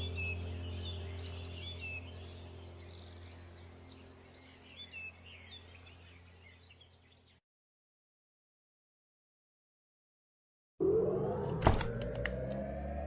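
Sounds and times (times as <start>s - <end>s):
low steady hum: 0.0s - 7.4s
small birds chirping: 0.0s - 7.4s.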